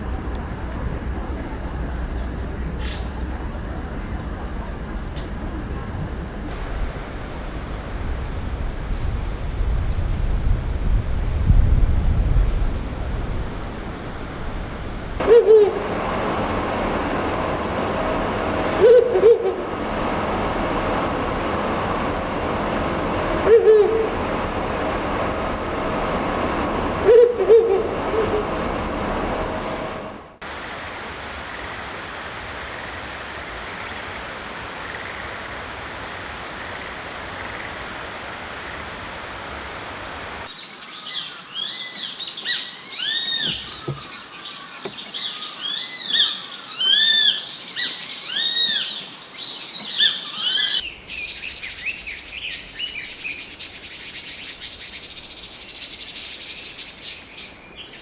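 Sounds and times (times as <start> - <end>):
songbird singing: 0.0 - 3.2, 6.5 - 30.4, 40.0 - 58.0
buzzard calls: 15.2 - 30.2
owl hooting: 15.2 - 30.3
repeated rising-and-falling whistles: 15.2 - 30.4.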